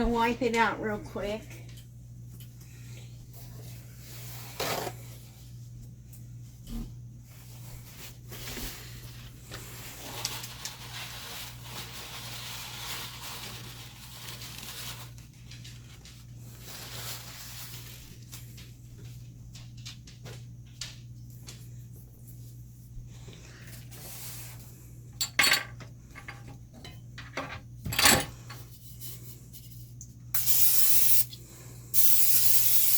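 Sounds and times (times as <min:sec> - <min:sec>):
steady low hum: 0:15.2 - 0:32.9.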